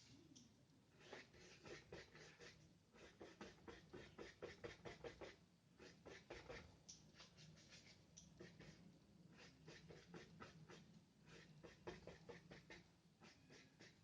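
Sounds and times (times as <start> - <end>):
paintbrush strokes on paper: 0.9 - 14.0.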